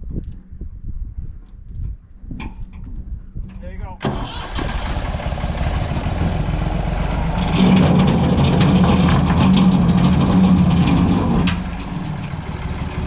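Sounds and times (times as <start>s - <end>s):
backhoe engine running: 4.1s - 13.0s.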